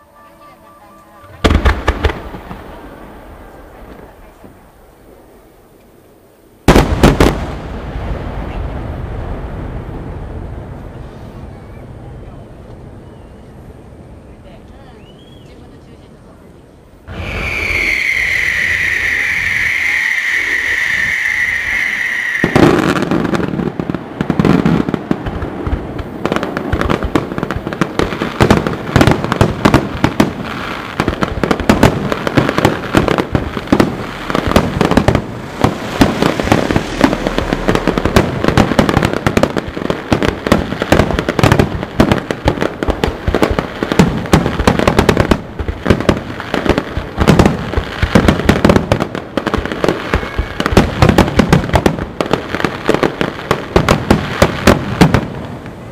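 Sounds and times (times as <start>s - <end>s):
firework whistle: 0.0s - 2.0s, 17.1s - 23.4s, 33.8s - 40.3s, 49.8s - 51.2s
fireworks banging and crackling: 0.0s - 5.4s, 6.6s - 12.8s, 17.1s - 55.9s.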